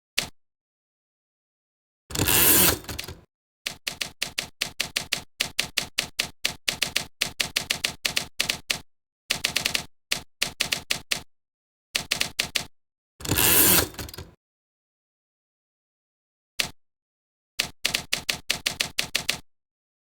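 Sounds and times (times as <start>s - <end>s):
rapid sharp mechanical clicks: 2.1s - 11.3s, 17.6s - 19.4s.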